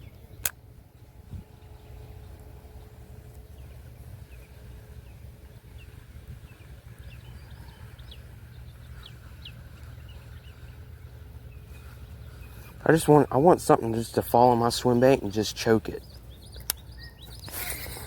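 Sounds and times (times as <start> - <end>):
wind rumble on microphone: 0.0 - 14.2
small birds chirping: 0.0 - 18.0.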